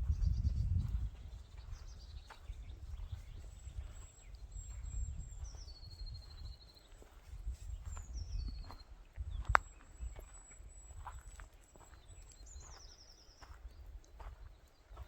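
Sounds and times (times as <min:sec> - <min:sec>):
low wind rumble: 0:00.0 - 0:06.6
birds singing rapid trills: 0:00.0 - 0:15.0
footsteps on forest floor: 0:00.8 - 0:15.0.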